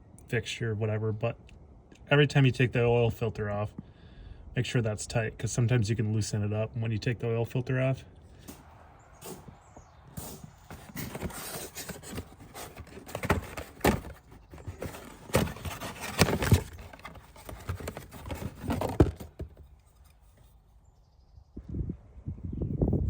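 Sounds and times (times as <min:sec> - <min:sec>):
hand tools clinking and scraping: 0:10.2 - 0:20.6.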